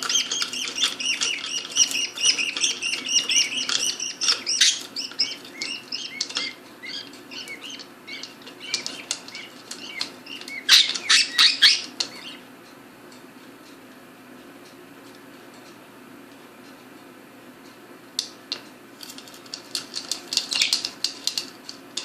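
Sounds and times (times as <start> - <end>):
budgerigars chirping: 0.0 - 12.4.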